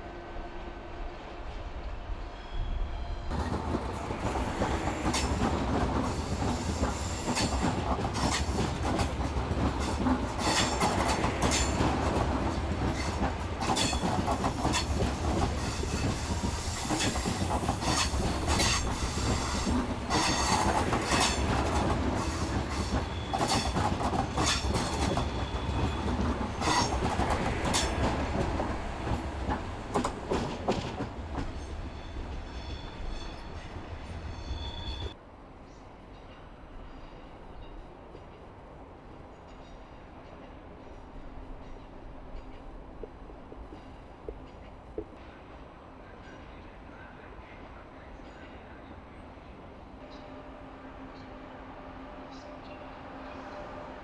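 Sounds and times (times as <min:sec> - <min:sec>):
train running on rails: 0:00.0 - 0:54.0
wheels clicking over rail joints: 0:05.1 - 0:31.6
high wheel squeal: 0:24.4 - 0:27.9, 0:34.2 - 0:35.2.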